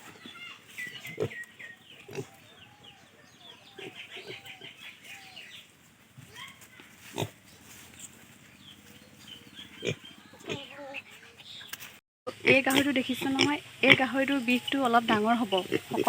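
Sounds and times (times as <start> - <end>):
pig grunting: 1.0 - 2.6, 3.7 - 5.4, 7.1 - 7.5, 9.0 - 11.2.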